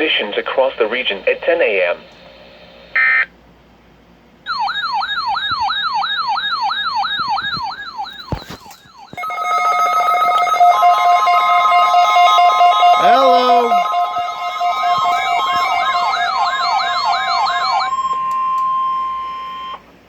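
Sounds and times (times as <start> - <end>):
electronic wailing siren tones: 4.5 - 19.9
steady electronic alarm: 4.5 - 19.9.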